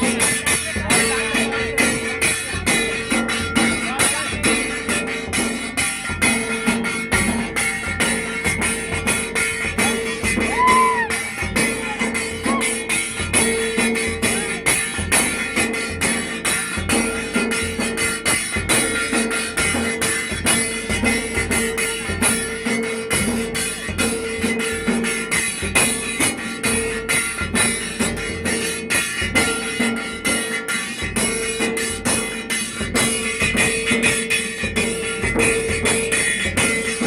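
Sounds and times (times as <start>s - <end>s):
drums beaten in fast rhythm: 0.0s - 37.0s
held note: 10.0s - 13.0s.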